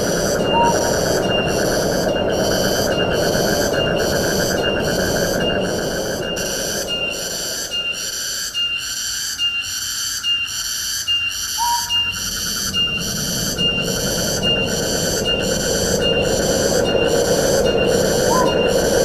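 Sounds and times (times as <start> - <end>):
high-pitched pulsing call: 0.0 - 2.1, 11.5 - 19.0
wind rushing: 0.0 - 8.6, 11.8 - 19.0.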